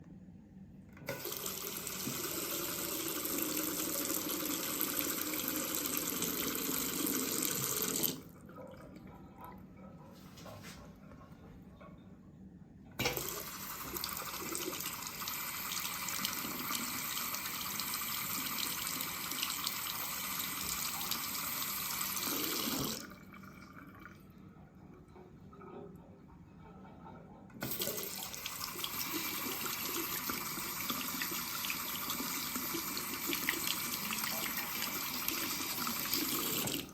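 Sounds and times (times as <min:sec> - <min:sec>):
water running from a tap: 0:01.1 - 0:08.2, 0:13.0 - 0:23.1, 0:27.6 - 0:36.9.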